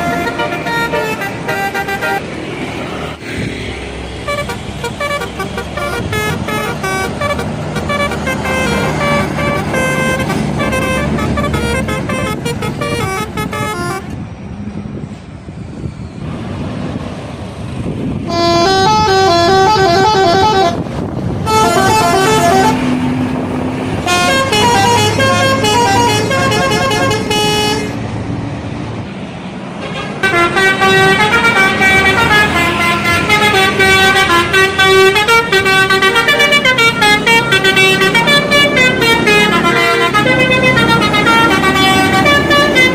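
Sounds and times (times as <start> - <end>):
bus horns playing melodies: 0.0 - 2.4, 4.1 - 14.2, 18.2 - 28.0, 29.8 - 42.9.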